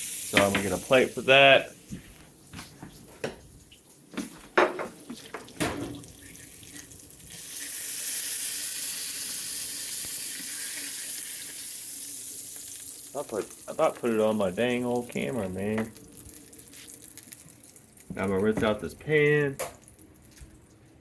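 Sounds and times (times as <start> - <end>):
water running into sink: 0.0 - 1.6, 4.4 - 15.9.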